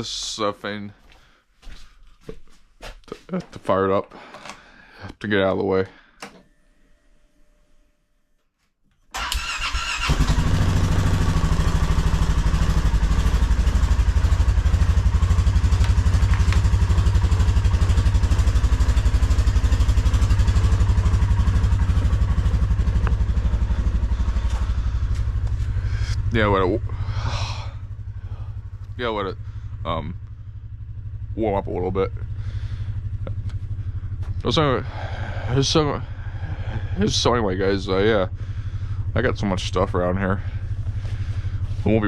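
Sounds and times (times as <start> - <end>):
starter motor cranking: 9.2 - 14.6
diesel engine idling: 9.4 - 42.0.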